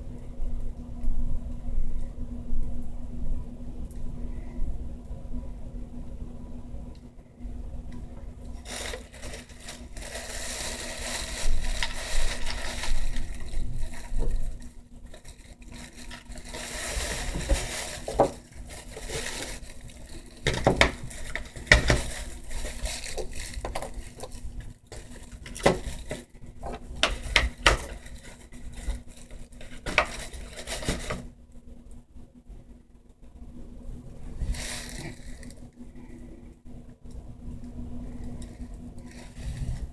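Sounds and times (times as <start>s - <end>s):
rustling: 8.5s - 31.3s, 34.2s - 36.2s, 38.2s - 39.9s.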